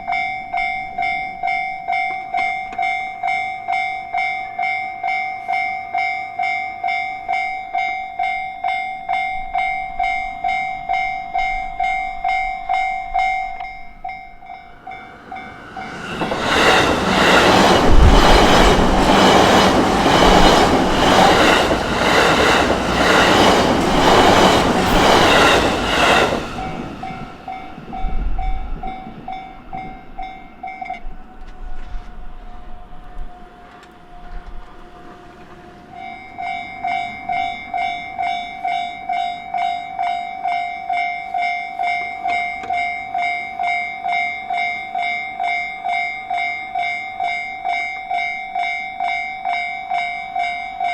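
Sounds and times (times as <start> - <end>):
level-crossing warning bell: 0.0 - 50.9
wheels clacking over rail joints: 14.8 - 28.1, 33.0 - 39.1.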